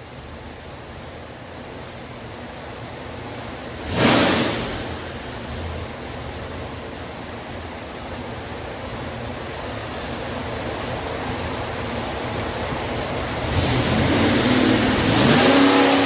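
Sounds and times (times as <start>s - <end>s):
car engine running: 0.1s - 16.0s
loud burst of engine sound: 3.8s - 6.0s, 13.4s - 16.0s.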